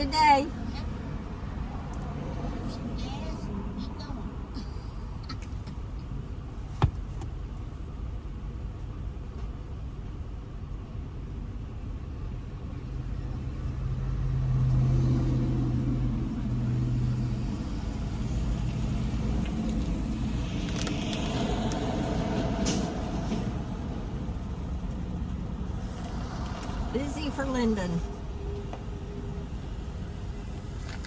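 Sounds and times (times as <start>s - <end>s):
car engine hum: 0.0s - 31.0s
road rumble: 0.0s - 31.0s.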